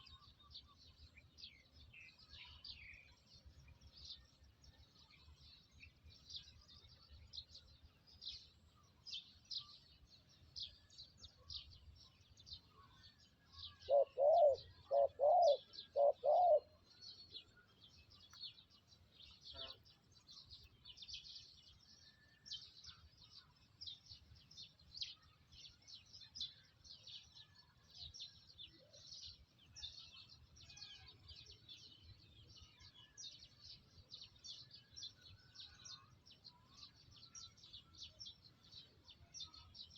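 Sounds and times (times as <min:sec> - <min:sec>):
small birds chirping: 0:00.0 - 0:39.9
dove cooing: 0:13.8 - 0:16.8.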